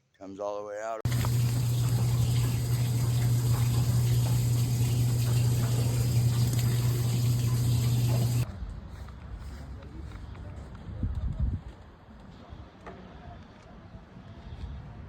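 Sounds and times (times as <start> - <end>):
low hum: 1.1 - 8.5
water running from drain line: 1.1 - 8.5.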